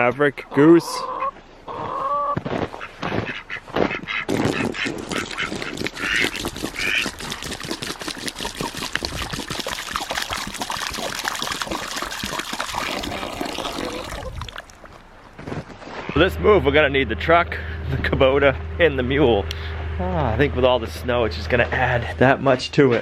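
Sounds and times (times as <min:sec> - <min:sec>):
ducks calling: 0:00.7 - 0:07.4
crackling splashing noise: 0:04.3 - 0:16.1.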